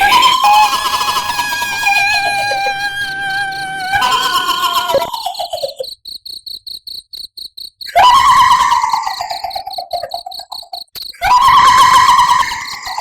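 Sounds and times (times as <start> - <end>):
eerie female wailing cry: 0.0 - 5.8, 7.9 - 9.6, 11.2 - 13.0
crickets chirping: 0.0 - 13.0.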